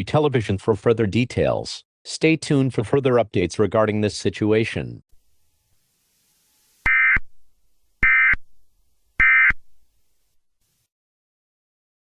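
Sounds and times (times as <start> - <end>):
digital data tone bursts: 6.2 - 7.3, 8.0 - 8.5, 9.2 - 9.6.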